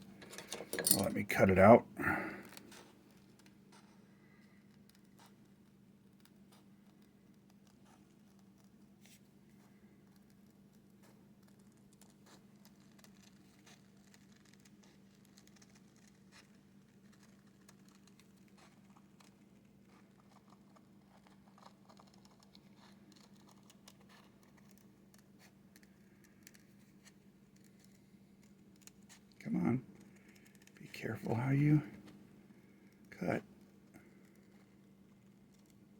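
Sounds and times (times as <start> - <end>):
steady low hum: 29.4 - 35.6.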